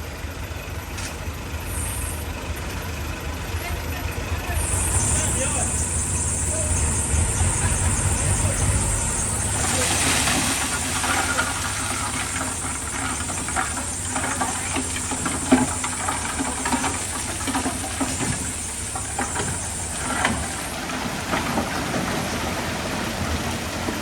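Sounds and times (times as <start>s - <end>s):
diesel machinery running: 0.0s - 24.0s
steady high hiss: 4.4s - 23.0s.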